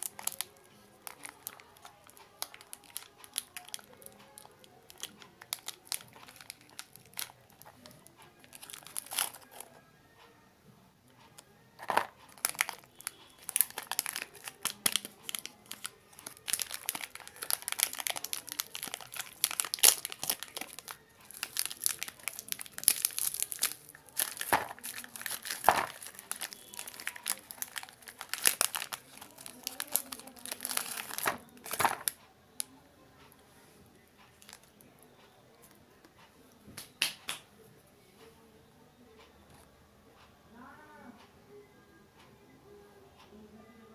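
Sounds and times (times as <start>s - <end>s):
plastic wrappers crinkling: 0.0s - 9.8s, 11.8s - 32.2s, 34.4s - 34.8s.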